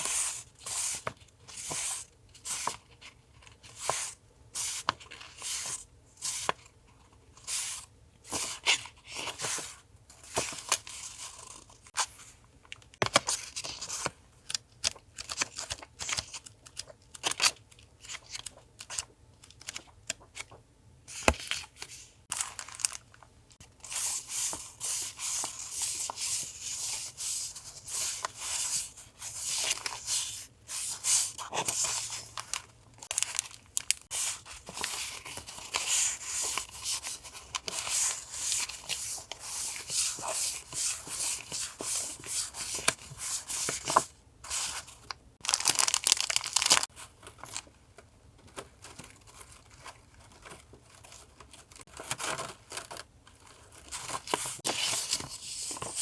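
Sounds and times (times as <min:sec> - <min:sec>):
packaging crinkling and rustling: 0:22.3 - 0:23.6, 0:31.3 - 0:36.8, 0:44.6 - 0:56.0.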